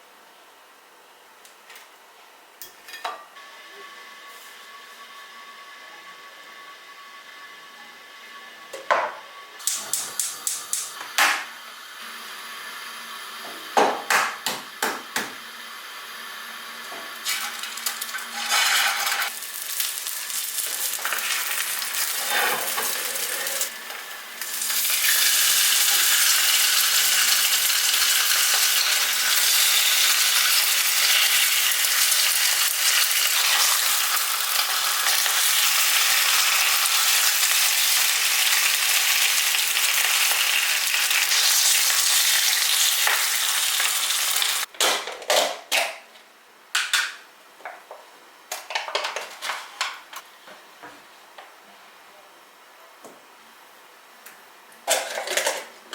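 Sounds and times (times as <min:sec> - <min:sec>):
food sizzling in a frying pan: 0:15.4 - 0:44.7.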